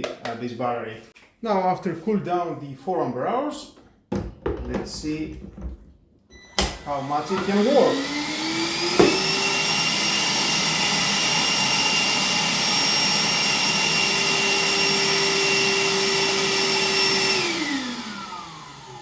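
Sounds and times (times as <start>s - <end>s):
vacuum motor whining: 6.3s - 19.0s.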